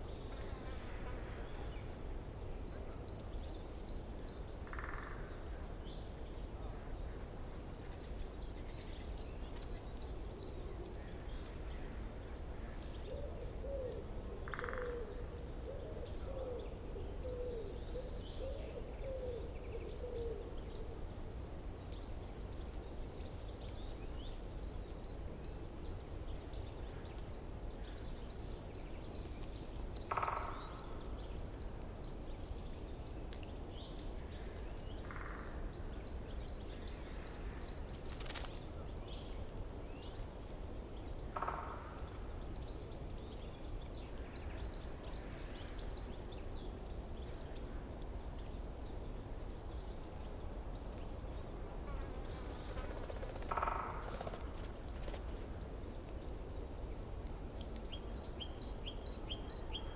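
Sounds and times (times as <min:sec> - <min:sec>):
songbirds trilling: 0:51.0 - 0:55.3.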